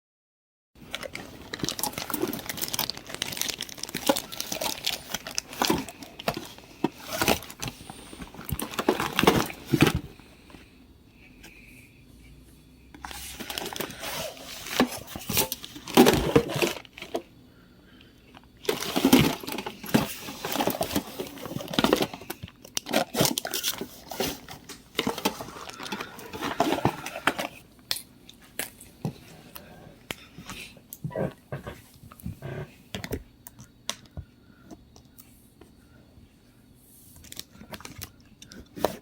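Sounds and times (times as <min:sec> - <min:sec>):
toiletries rustling and clicking: 0:18.6 - 0:27.6.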